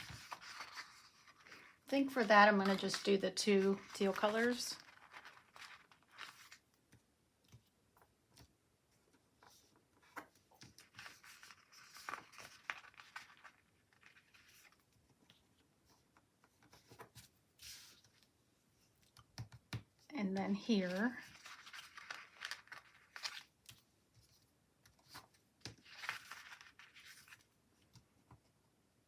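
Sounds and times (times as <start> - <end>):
paper stickers peeling and rustling: 0.0 - 6.6, 10.0 - 14.8, 20.8 - 23.5, 25.0 - 27.5
small clicks and taps: 19.0 - 20.0.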